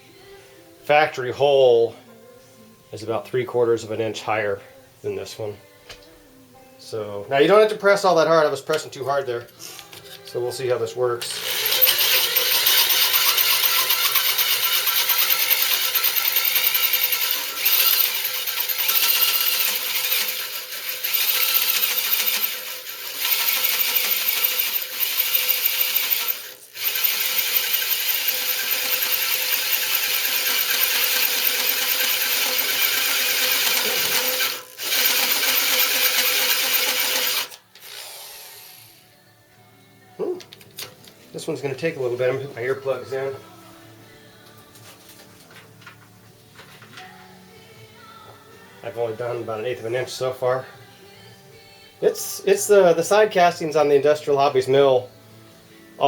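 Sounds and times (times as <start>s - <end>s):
hole saw grinding metal: 9.6s - 39.0s.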